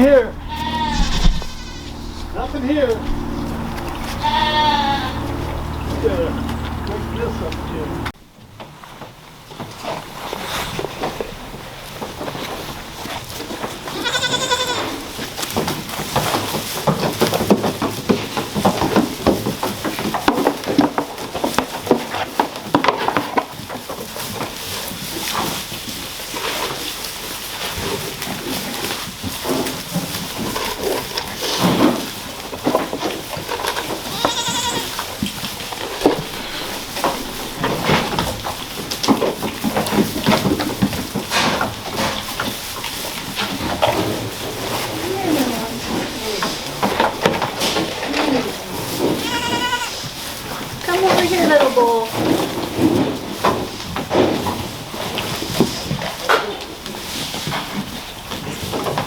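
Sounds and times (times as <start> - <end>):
goats bleating: 0.0 - 8.1, 13.9 - 15.1, 33.8 - 35.2, 36.0 - 39.4, 47.9 - 50.2.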